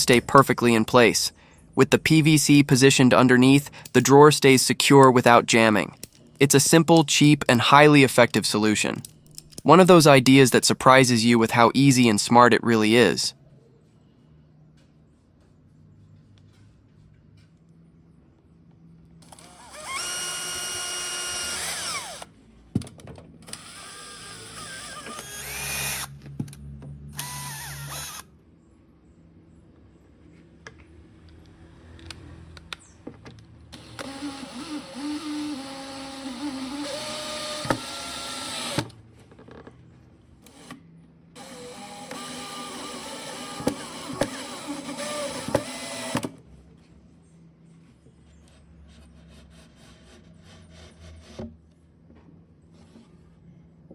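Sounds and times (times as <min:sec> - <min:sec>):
power tool running: 0:19.2 - 0:22.3, 0:23.5 - 0:26.2, 0:27.2 - 0:28.2, 0:33.8 - 0:38.9, 0:41.4 - 0:46.4.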